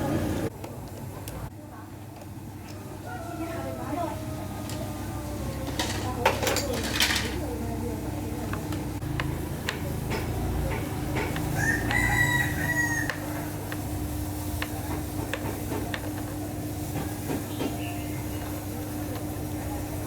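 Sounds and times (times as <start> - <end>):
rooster crowing: 2.7 - 5.8, 11.5 - 13.6.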